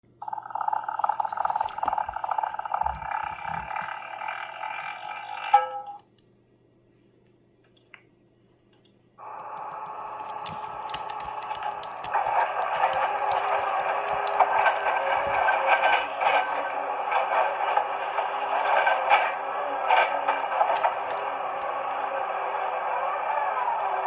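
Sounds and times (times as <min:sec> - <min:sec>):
faint clicks: 0:08.7 - 0:16.4
rattling engine drone: 0:09.7 - 0:24.0.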